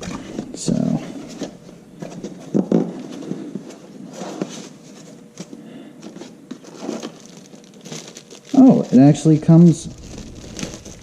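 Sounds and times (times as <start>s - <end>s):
packaging bump: 6.0s - 11.0s.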